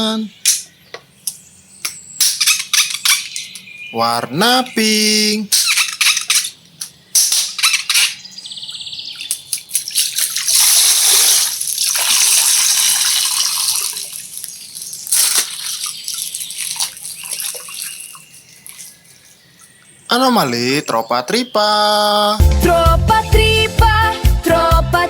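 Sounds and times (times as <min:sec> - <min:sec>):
plastic crinkling: 0:09.4 - 0:19.4
water gushing and splashing: 0:09.6 - 0:19.0.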